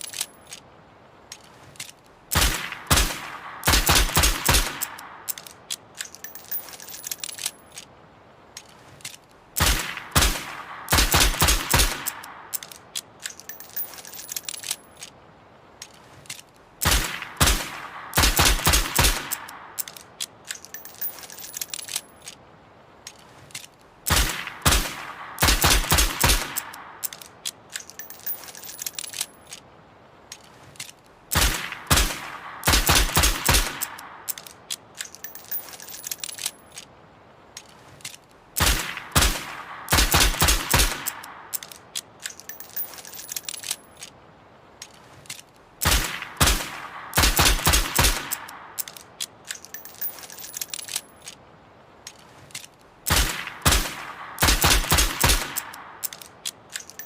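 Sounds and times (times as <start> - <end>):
metallic clicking: 1.3 - 7.9, 8.6 - 15.2, 15.8 - 22.4, 23.0 - 29.7, 30.3 - 36.9, 37.6 - 44.2, 44.8 - 51.4, 52.0 - 57.0
high tinkling jingle: 6.1 - 7.8, 13.4 - 15.0, 20.6 - 22.3, 27.8 - 29.5, 35.2 - 36.8, 42.4 - 44.0, 49.6 - 51.3
revolver gunshots: 24.1 - 27.0, 53.1 - 56.0.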